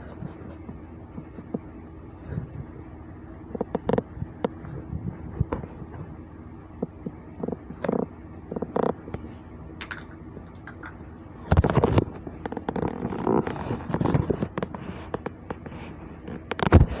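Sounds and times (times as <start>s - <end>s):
small clicks and knocks: 3.5s - 4.6s, 6.8s - 9.2s, 9.8s - 17.0s.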